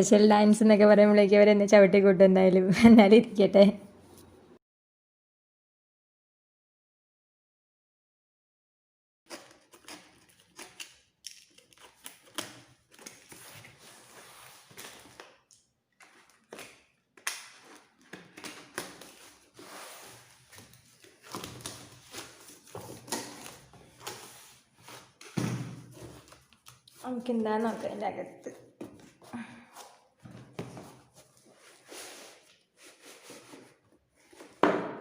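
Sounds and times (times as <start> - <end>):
packaging rustling and crinkling: 16.0 - 27.1.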